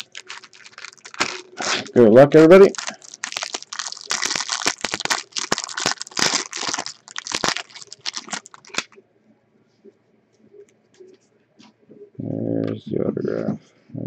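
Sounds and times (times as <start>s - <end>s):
wrapper crinkling: 0.0s - 9.0s.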